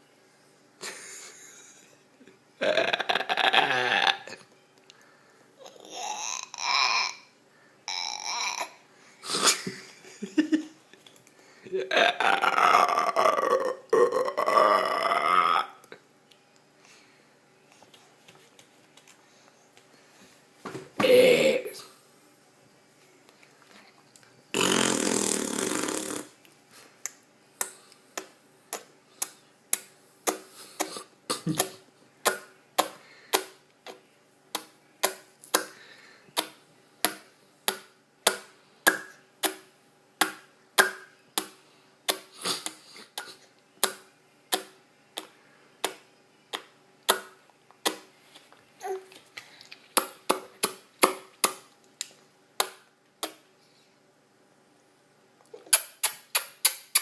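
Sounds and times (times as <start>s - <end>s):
baby blowing noisily: 24.6s - 26.4s
baby mouth clicks: 40.3s - 48.1s, 50.0s - 53.4s, 55.6s - 57.0s.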